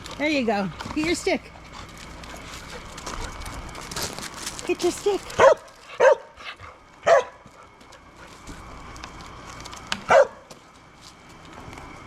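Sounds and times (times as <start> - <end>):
dog barking: 5.4 - 6.3, 7.0 - 7.4, 10.1 - 10.4.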